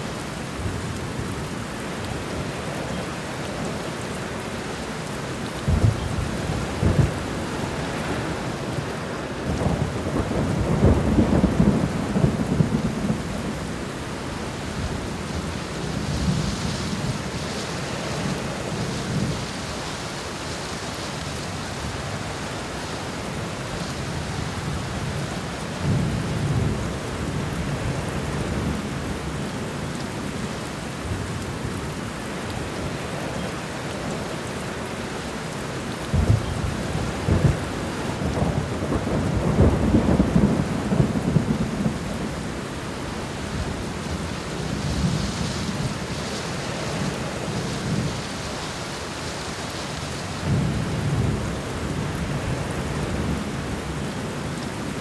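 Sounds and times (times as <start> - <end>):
steady rain: 0.0 - 55.0
thunder rumbling: 5.7 - 19.6, 36.1 - 48.5.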